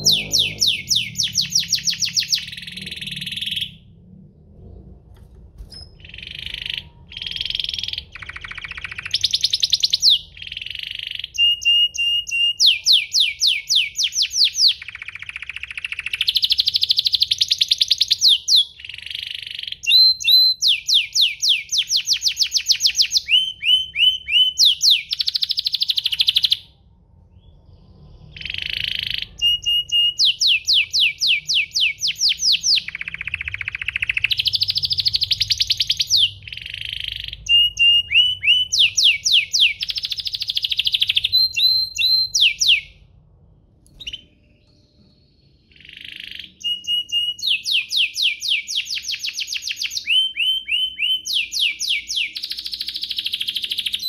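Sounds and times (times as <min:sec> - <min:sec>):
canary singing trills: 0:00.0 - 0:04.1, 0:05.6 - 0:43.0, 0:43.9 - 0:54.0.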